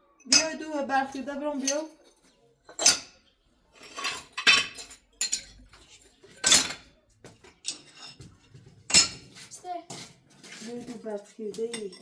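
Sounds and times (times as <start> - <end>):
hard objects clinking and knocking: 0.3 - 3.2, 3.8 - 9.4.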